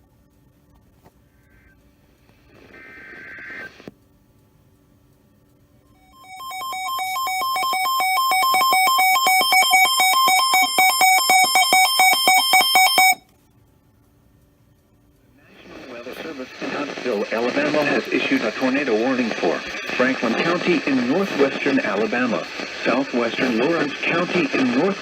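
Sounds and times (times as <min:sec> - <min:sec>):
two-tone electronic beeping alarm: 0:06.0 - 0:13.2.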